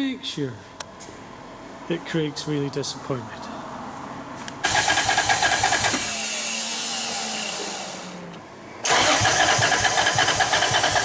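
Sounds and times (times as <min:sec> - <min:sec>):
car engine cranking on starter: 0:04.6 - 0:11.0.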